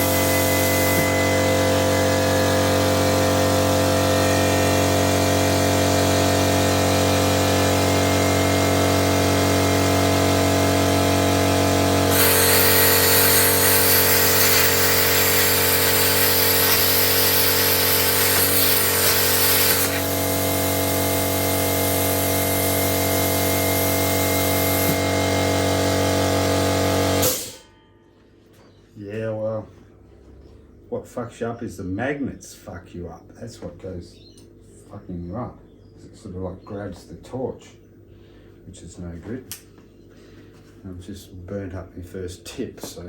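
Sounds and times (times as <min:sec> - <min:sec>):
plasma torch hissing blast: 0:00.0 - 0:01.2, 0:12.1 - 0:25.0
machine hum: 0:00.0 - 0:30.9.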